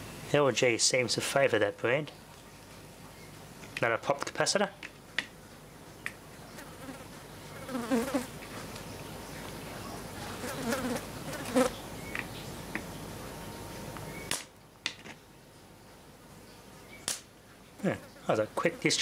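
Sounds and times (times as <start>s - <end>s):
electrical buzzing: 7.6s - 8.4s, 10.4s - 11.8s.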